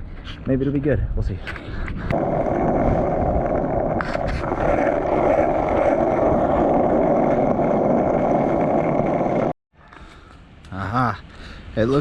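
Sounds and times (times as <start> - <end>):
skateboard wheels rolling on asphalt: 2.1 - 9.6.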